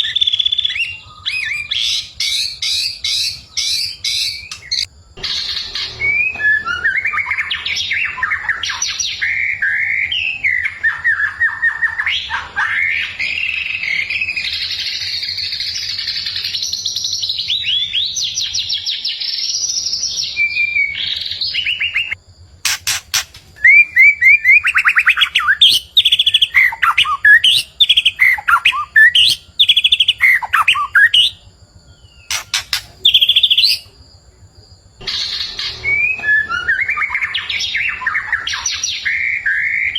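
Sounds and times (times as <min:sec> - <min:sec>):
bird singing whistled trills: 0:00.0 - 0:34.0, 0:35.0 - 0:39.9
sharp clicks: 0:04.4 - 0:04.9, 0:22.6 - 0:23.6, 0:32.3 - 0:33.3.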